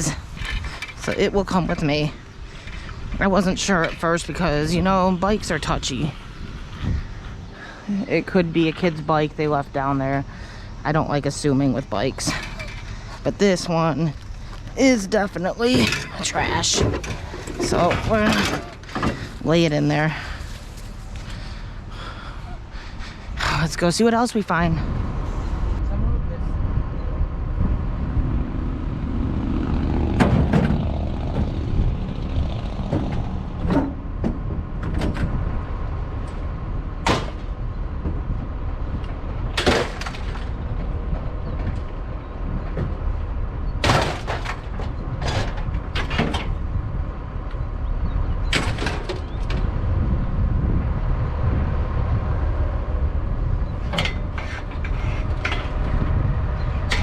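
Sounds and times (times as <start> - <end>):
sharp clanks and knocks: 0.0 - 4.5, 15.6 - 19.6, 29.9 - 35.5, 37.0 - 46.8, 48.4 - 49.8, 53.6 - 57.0
truck engine and road rumble: 0.0 - 57.0.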